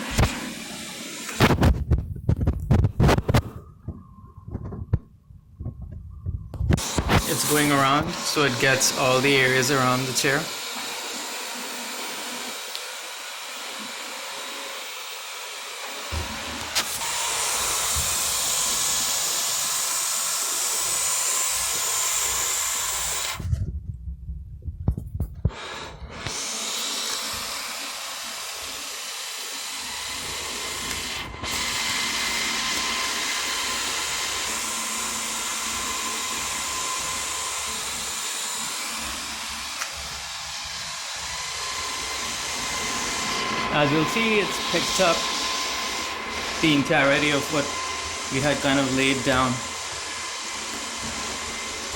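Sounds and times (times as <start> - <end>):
robot vacuum whirring: 0.0 - 1.9, 6.8 - 23.5, 25.5 - 51.9
low thumps: 1.6 - 7.2.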